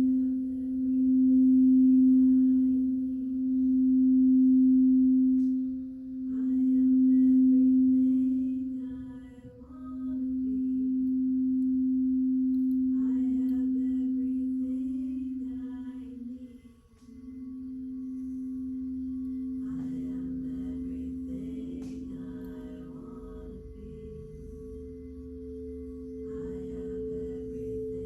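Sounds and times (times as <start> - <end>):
singing bowl low tone: 0.0 - 28.0
higher ringing tones: 15.0 - 28.0.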